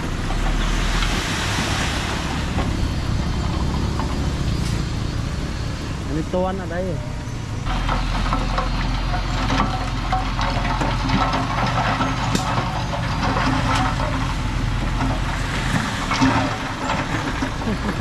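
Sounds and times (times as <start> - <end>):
diesel engine running: 0.0 - 18.0
sharp knocks and clanks: 6.3 - 18.0.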